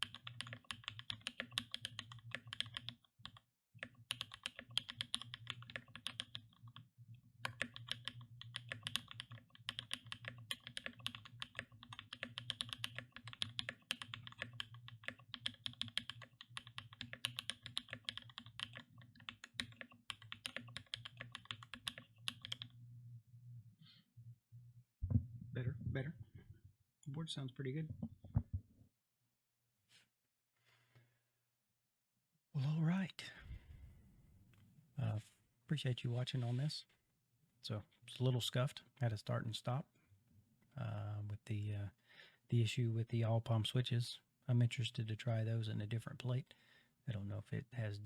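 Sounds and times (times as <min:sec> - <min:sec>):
fast typing on mechanical keyboard: 0:00.0 - 0:06.8, 0:07.4 - 0:22.7.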